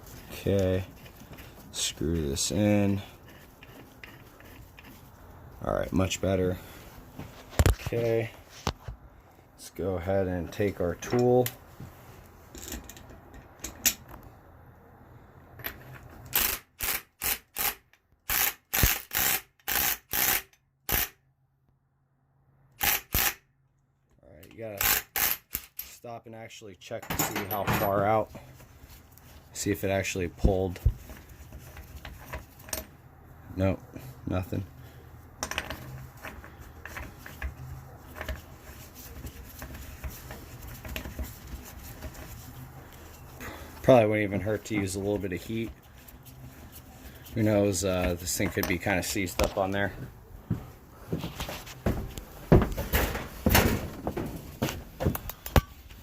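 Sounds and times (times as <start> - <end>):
impact wrench rattling bursts: 16.3 - 21.2, 22.8 - 23.4, 24.8 - 25.8.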